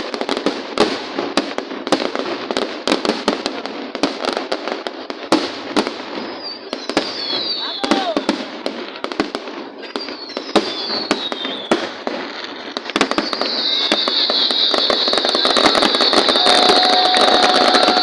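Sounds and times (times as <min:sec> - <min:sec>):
firework bangs and pops: 0:00.0 - 0:18.0
firework crackling: 0:00.0 - 0:18.0
falling firework whistle: 0:06.1 - 0:08.3, 0:09.8 - 0:18.0.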